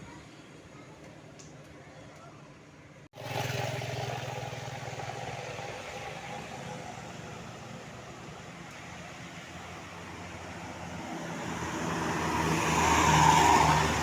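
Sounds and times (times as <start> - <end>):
vehicle engine passing: 3.2 - 14.0.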